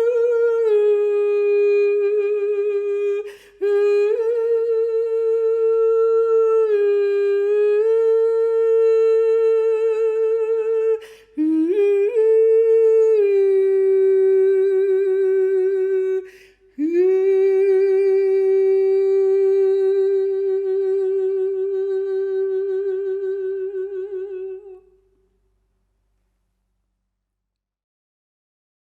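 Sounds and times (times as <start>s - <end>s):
person singing long wordless tones: 0.0s - 25.0s.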